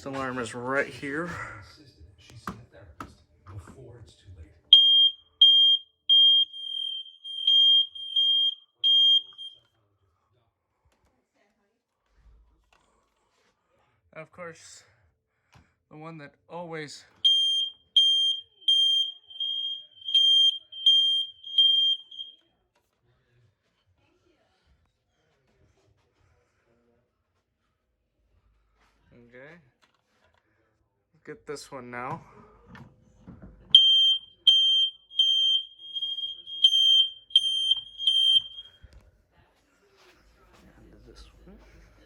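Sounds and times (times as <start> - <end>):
smoke alarm beeping: 4.7 - 9.6, 17.3 - 22.4, 33.7 - 38.8.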